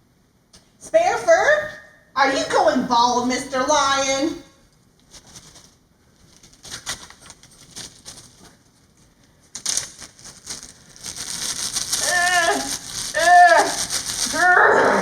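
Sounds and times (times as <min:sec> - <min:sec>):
rustling of puppets and props: 0:03.8 - 0:15.0.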